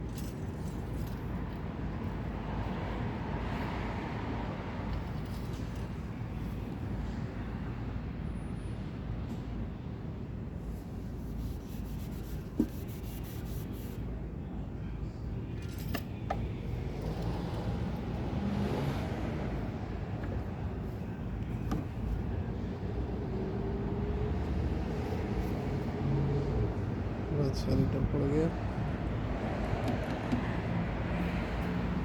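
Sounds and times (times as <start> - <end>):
vehicle engines rumbling: 14.3 - 32.0.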